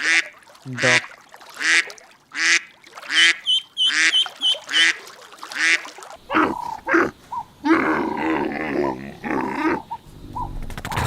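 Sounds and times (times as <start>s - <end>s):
duck quacking: 0.0s - 7.5s
animal calling: 2.4s - 11.0s.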